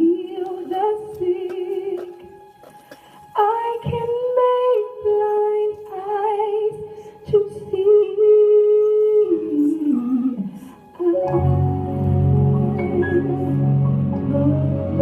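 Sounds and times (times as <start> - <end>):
woman singing unaccompanied: 0.0 - 2.4, 3.3 - 15.0.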